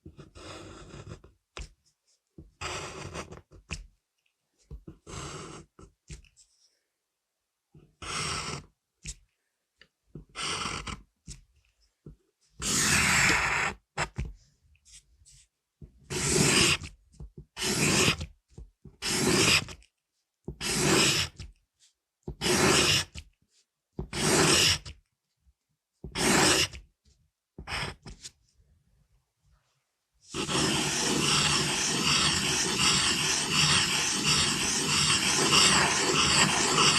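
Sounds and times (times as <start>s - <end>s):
pencil scratching on paper: 0.0s - 3.8s, 4.6s - 6.6s, 7.8s - 9.2s, 10.2s - 11.4s, 12.6s - 19.9s, 20.5s - 25.0s, 26.0s - 26.8s, 27.6s - 28.4s, 30.2s - 36.9s.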